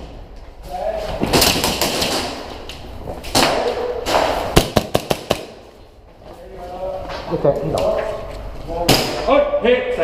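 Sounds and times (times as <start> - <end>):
airsoft gun shots: 3.3 - 5.6.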